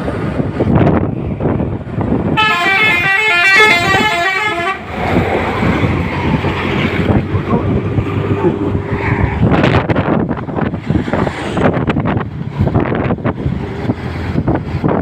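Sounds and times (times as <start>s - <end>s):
rumble of passing bus: 0.0s - 15.0s
multi-tone bus horn melody: 2.2s - 5.0s.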